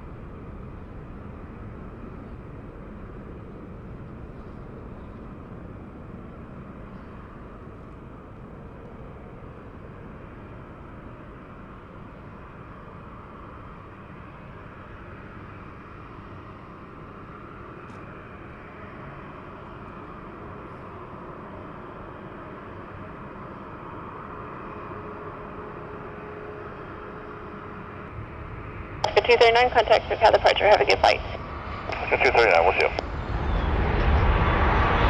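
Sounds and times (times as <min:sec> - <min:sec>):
jet engines roaring: 0:28.4 - 0:35.0.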